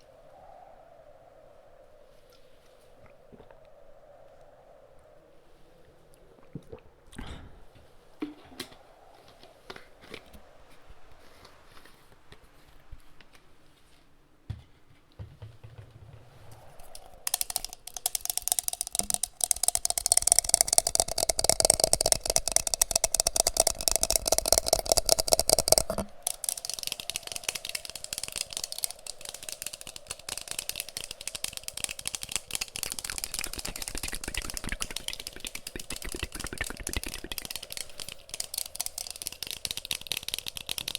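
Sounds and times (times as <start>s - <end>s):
fingers tapping on object: 17.3s - 40.9s.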